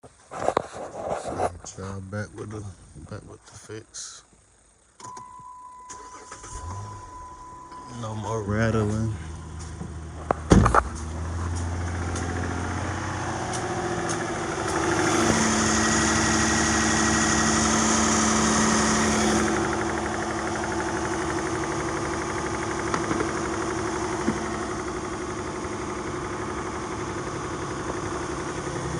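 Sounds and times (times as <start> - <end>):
car engine idling: 6.0 - 28.9.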